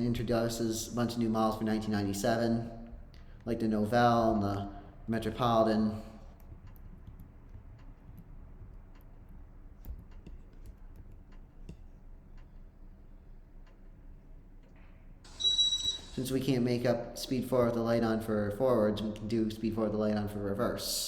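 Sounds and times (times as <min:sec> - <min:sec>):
ceiling fan humming: 0:00.0 - 0:21.0
light ticking: 0:04.5 - 0:15.2
high electronic beep: 0:15.3 - 0:16.2.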